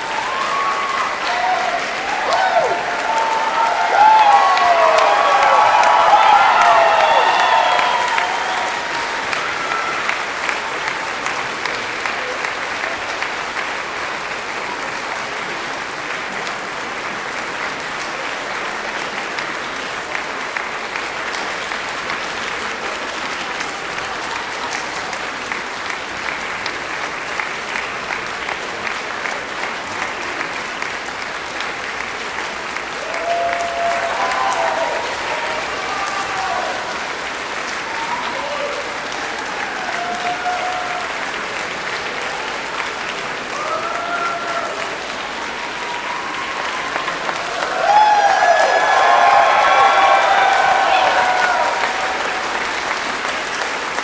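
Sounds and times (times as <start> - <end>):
audience applauding: 0.0 - 54.0.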